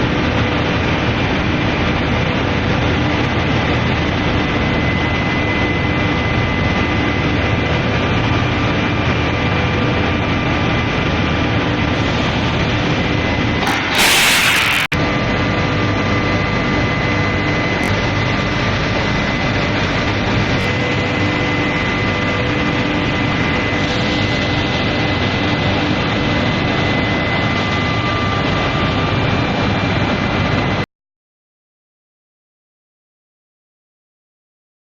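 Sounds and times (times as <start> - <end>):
furnace machine rush: 13.6 - 15.0.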